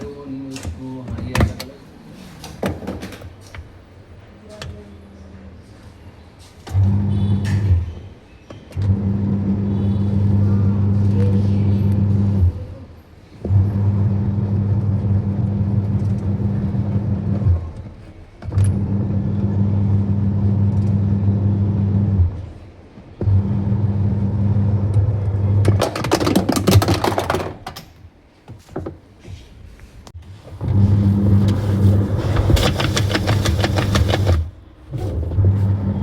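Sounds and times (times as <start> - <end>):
washing machine motor humming: 18.4 - 22.6, 23.2 - 25.9, 30.4 - 36.0.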